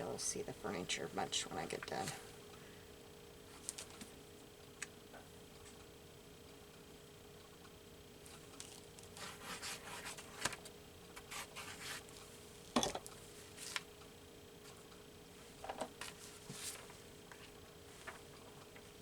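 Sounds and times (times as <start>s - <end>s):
paper rubbed by hand: 9.2s - 10.3s.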